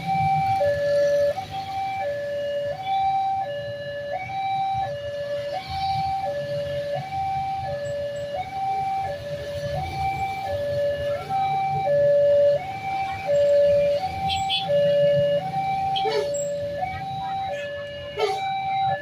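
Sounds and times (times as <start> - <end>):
two-tone crossing alarm: 0.0 - 19.0.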